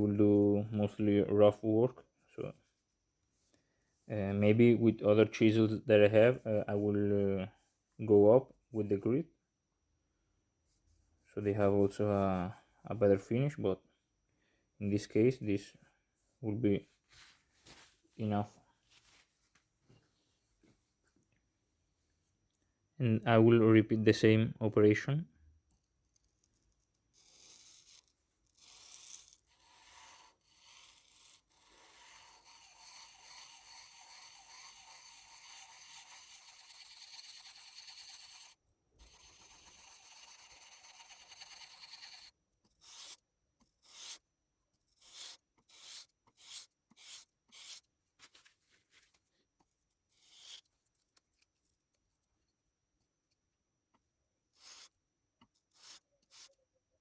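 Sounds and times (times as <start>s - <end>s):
chisel rubbing on sandpaper: 26.5s - 44.2s, 44.8s - 49.2s, 50.1s - 50.7s, 54.5s - 55.0s, 55.6s - 56.6s.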